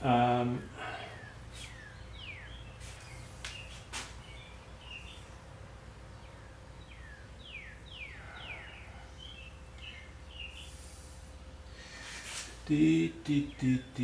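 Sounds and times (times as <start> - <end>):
faint low hum: 0.0 - 14.0
bird chirps: 0.8 - 5.4, 6.1 - 11.0.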